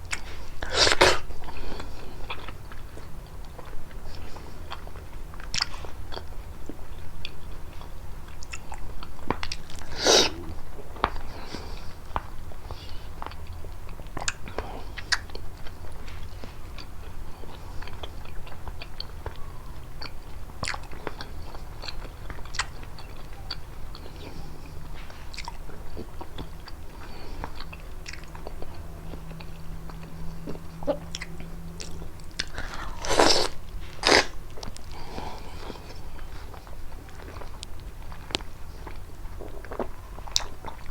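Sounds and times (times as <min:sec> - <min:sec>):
wet chewing and crunching: 0:00.0 - 0:40.9.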